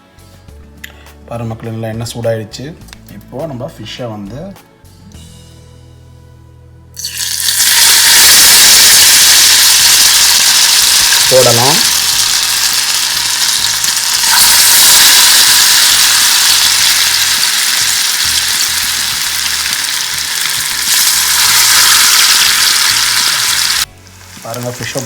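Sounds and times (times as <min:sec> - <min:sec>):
fish sizzling in hot oil: 0:07.0 - 0:25.0.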